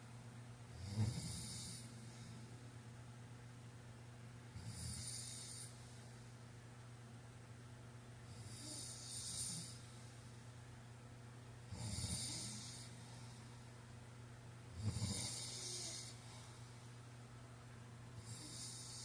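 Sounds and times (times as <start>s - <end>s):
man snoring: 0.7s - 2.0s, 4.6s - 5.8s, 8.3s - 9.8s, 11.7s - 13.0s, 14.7s - 16.2s, 18.2s - 19.0s.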